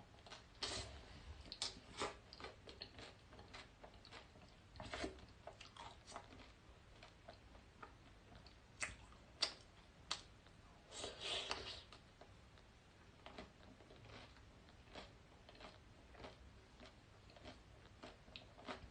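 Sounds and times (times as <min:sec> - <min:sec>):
person chewing and biting: 0:01.5 - 0:10.2, 0:13.2 - 0:18.9.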